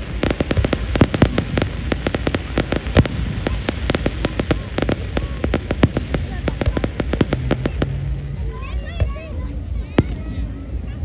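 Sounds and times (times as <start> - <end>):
fireworks shells bursting: 0.0 - 8.0
low rumble: 0.0 - 11.0.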